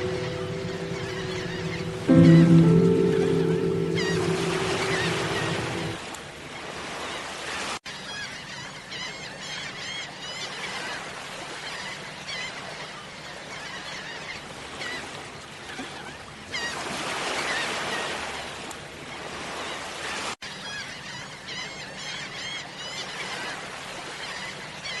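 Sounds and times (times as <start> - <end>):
music track: 0.0 - 6.0.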